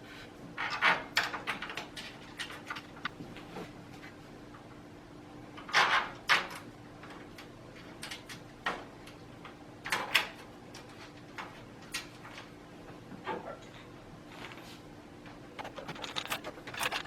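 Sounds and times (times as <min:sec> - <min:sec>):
screws and metal parts clicking: 0:15.6 - 0:17.0.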